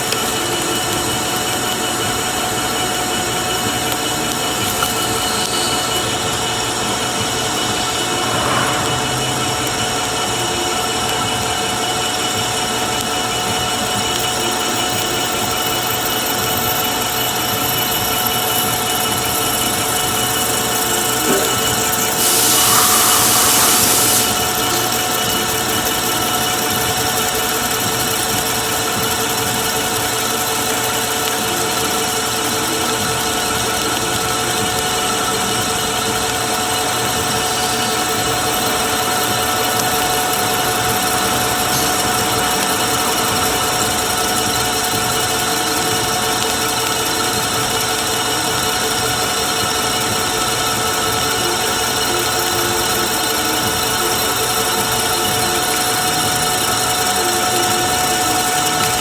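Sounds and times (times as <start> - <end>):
machine tool whining: 0.0 - 59.0
burst of hiss: 7.2 - 10.8, 21.0 - 25.4.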